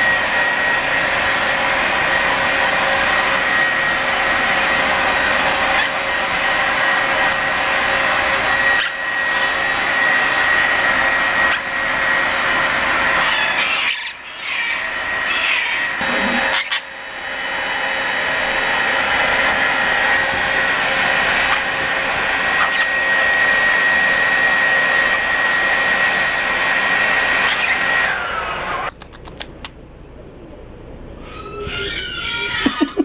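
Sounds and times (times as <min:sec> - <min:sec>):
quick clicks: 0:28.9 - 0:29.8.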